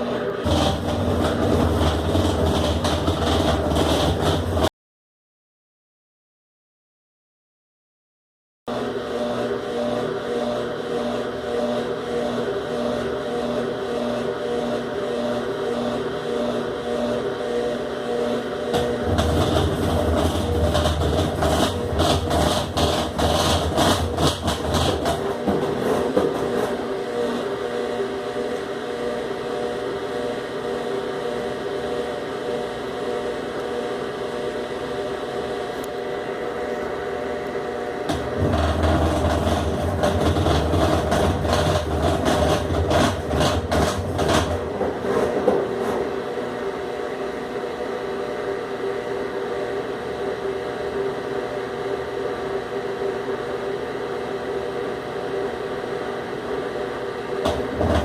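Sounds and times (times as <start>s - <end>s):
washing machine draining hum: 0.0s - 4.7s, 8.7s - 58.0s
rapid clattering with low drone: 38.1s - 46.0s.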